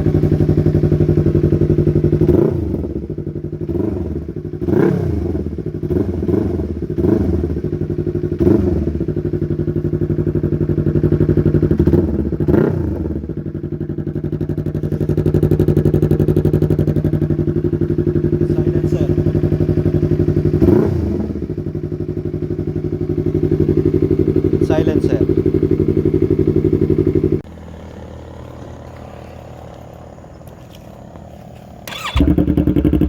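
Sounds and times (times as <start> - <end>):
motorcycle engine idling: 0.0 - 33.0
engine throttle blips: 14.4 - 33.0.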